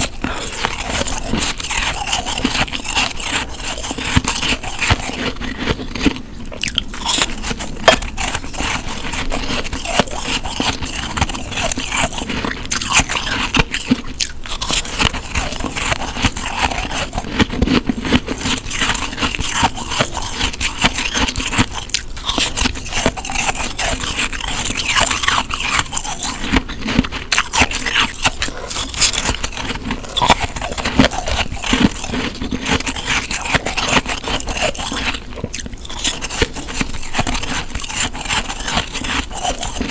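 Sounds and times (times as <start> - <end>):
chewing snow crunching: 0.0 - 39.9.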